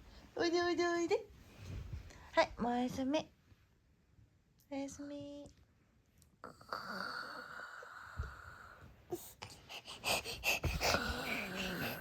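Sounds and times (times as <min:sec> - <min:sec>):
woman snoring: 0:06.4 - 0:08.8, 0:10.8 - 0:12.0.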